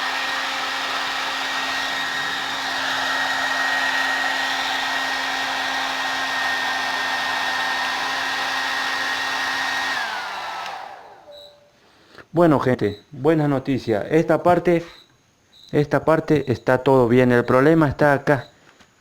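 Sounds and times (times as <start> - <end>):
hair dryer running: 0.0 - 11.4.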